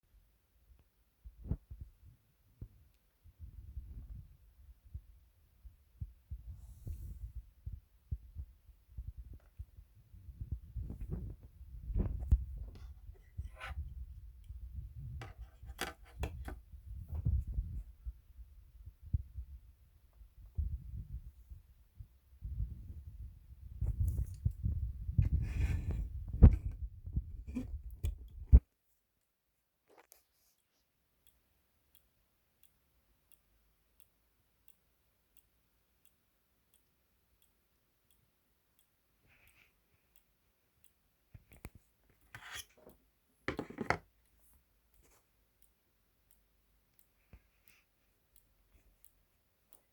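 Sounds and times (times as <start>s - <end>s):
faint evenly spaced clicks: 30.6s - 42.3s, 44.1s - 49.9s.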